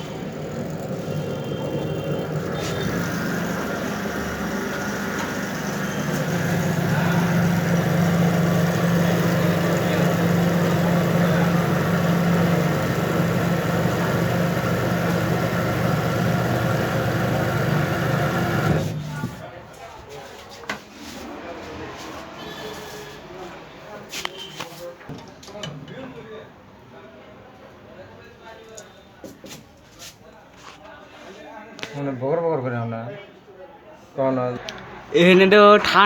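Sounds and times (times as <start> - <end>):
motor humming: 0.0 - 19.4.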